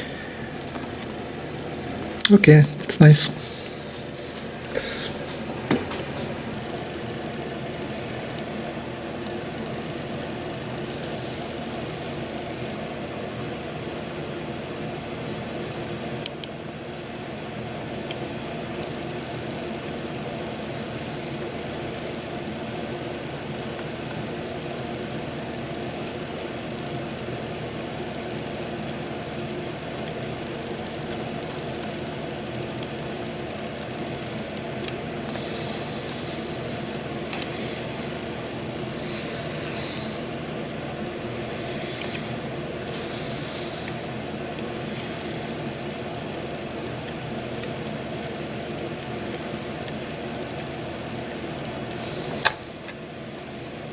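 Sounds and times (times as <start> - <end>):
machine hum: 0.0 - 53.9.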